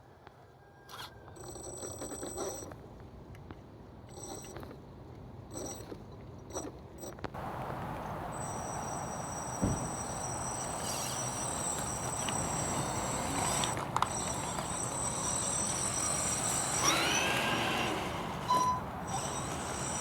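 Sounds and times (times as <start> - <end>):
electric motor whine: 7.4 - 20.0
short chirping sweeps: 7.4 - 20.0
click: 8.3 - 20.0.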